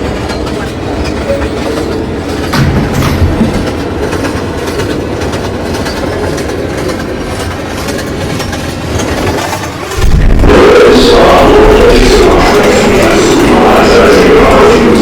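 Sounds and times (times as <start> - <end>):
subway train wheels rumbling on rail: 0.0 - 15.0
deeper louder rumble: 10.0 - 14.9.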